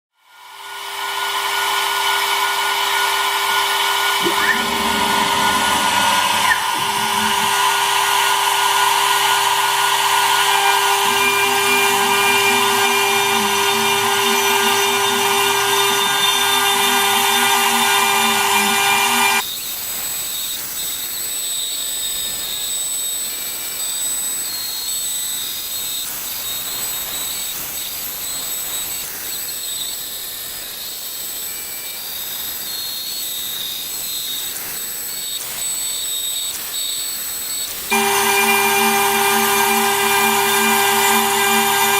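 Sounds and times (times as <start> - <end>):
router spindle high-pitched whine: 0.2 - 41.9
stepper motors humming: 0.4 - 19.4, 37.9 - 41.9.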